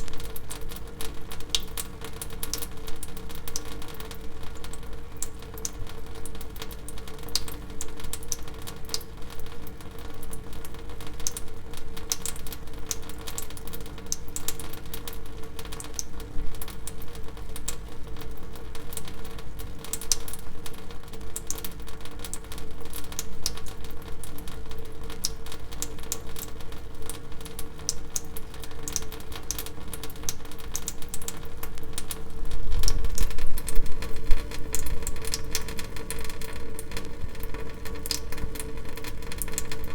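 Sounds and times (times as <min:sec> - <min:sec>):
water dripping: 0:00.0 - 0:11.4, 0:12.1 - 0:19.1, 0:21.4 - 0:39.9.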